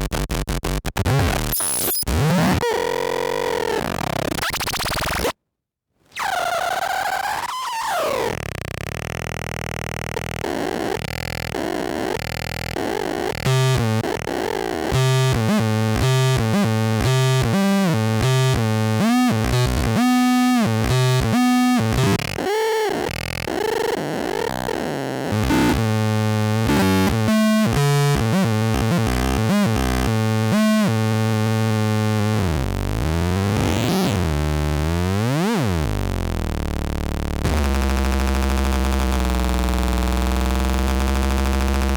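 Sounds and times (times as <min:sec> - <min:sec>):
distorted synth tones: 0:08.8 - 0:40.5.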